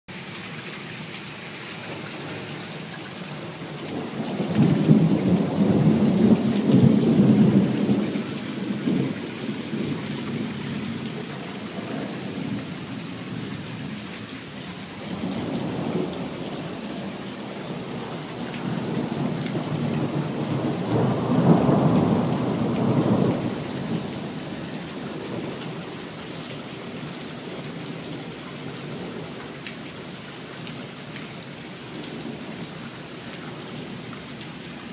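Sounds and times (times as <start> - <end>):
rain falling: 0.1 - 34.9
thunder rolling: 3.9 - 12.6.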